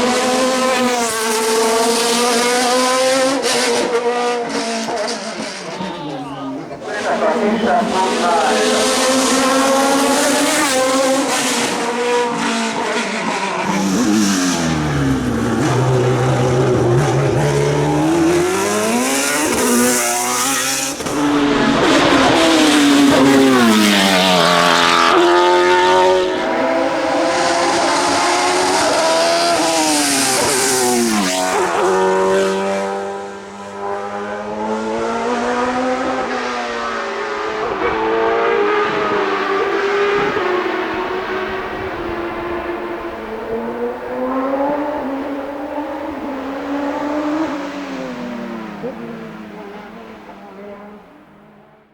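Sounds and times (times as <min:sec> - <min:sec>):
race car engine at high revs: 0:00.0 - 0:51.9.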